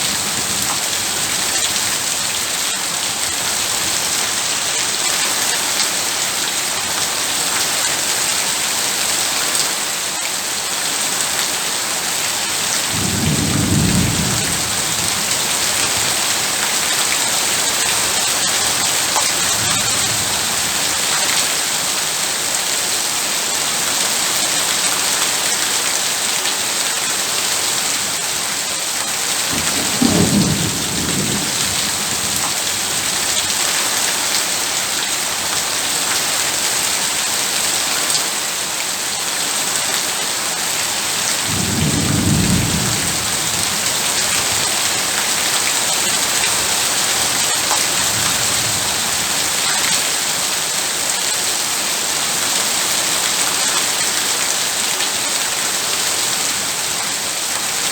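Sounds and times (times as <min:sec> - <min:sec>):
heavy rain falling: 0:00.0 - 0:57.9
low thunder rolls: 0:12.9 - 0:16.2, 0:29.5 - 0:33.3, 0:41.5 - 0:44.9.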